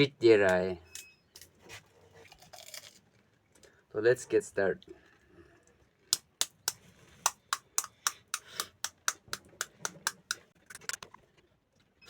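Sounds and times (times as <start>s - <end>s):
crisp shells crunching in mouth: 2.2s - 3.1s.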